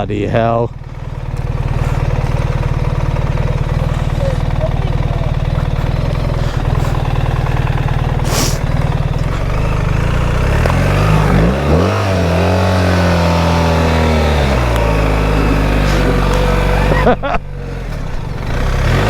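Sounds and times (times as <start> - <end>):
motorcycle engine revving: 0.0 - 19.0
brief hiss: 8.3 - 8.7.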